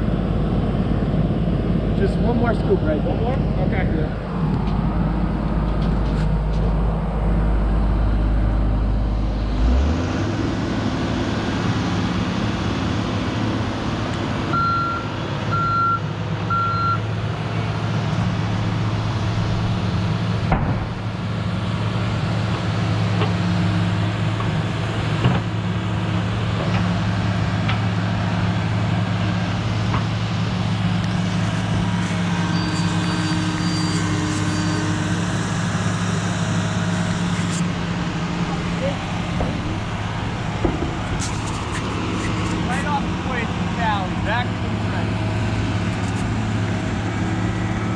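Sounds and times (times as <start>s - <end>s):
excavator diesel engine running: 0.0s - 47.9s
backup alarm beeps: 14.5s - 17.0s
sharp knocks: 40.5s - 42.4s.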